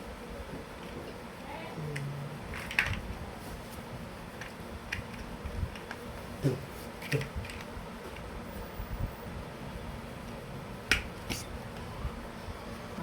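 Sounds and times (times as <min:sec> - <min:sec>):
plastic toy blocks clicking: 0:02.5 - 0:03.0.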